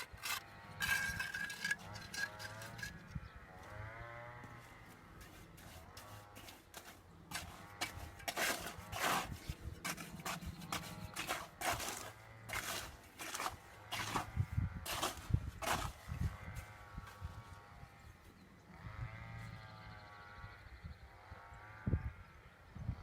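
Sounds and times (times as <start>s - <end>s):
short scraping strokes: 0.0s - 3.2s, 4.4s - 16.2s.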